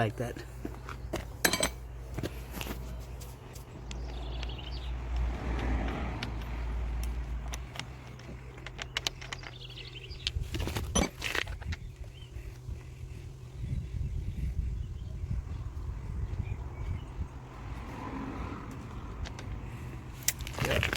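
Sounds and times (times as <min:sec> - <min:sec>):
vehicle passing by: 0:03.7 - 0:08.5, 0:15.0 - 0:20.8
spanner clicking on wheel bolts: 0:05.2 - 0:11.8.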